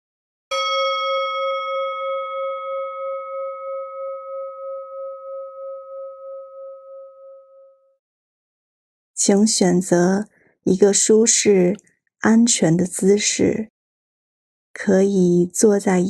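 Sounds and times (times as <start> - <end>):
singing bowl ringing: 0.5 - 8.0.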